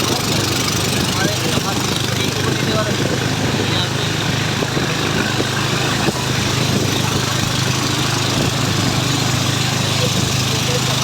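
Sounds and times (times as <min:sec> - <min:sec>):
small engine running: 0:00.0 - 0:11.0.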